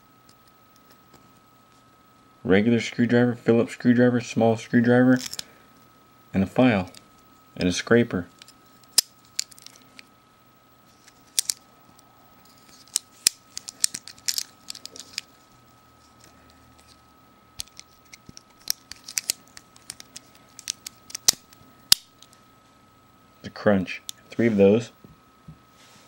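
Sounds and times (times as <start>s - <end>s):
multitool metallic clicks and snaps: 17.6s - 22.3s.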